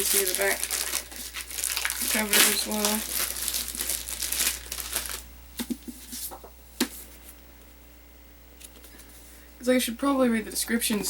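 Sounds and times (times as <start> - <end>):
paper rustling: 0.0 - 7.3.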